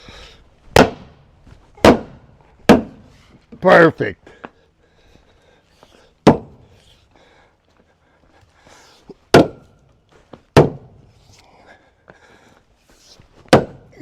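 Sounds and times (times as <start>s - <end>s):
heavy knocks on timber: 0.7s - 1.1s, 1.8s - 3.0s, 6.2s - 6.6s, 9.3s - 9.6s, 10.6s - 11.0s, 13.5s - 13.8s.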